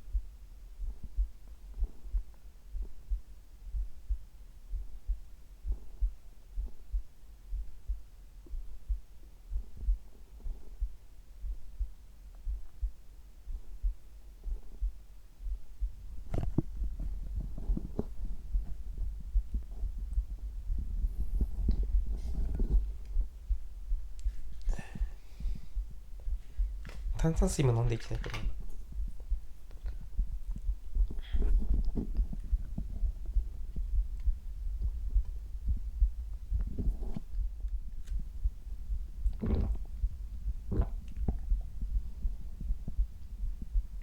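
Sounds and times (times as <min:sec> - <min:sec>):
heartbeat thumps: 0:00.0 - 0:44.0
stomach gurgling: 0:15.9 - 0:27.2, 0:28.6 - 0:44.0.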